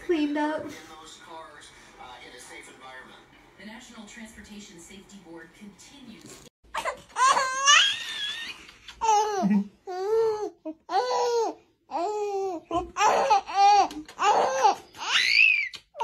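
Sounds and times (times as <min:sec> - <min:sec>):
baby laughing and squealing: 0:06.8 - 0:16.0.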